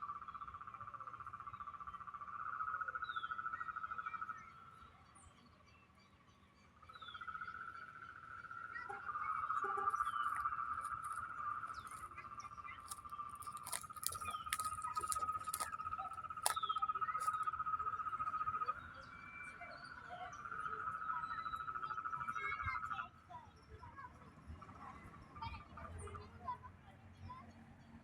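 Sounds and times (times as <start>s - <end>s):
frogs trilling: 0.0s - 5.0s, 6.9s - 23.0s.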